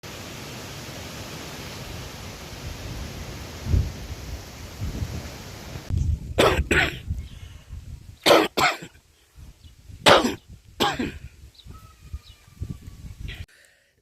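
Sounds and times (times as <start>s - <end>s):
person coughing: 6.4s - 7.0s, 8.3s - 9.0s, 10.1s - 11.3s.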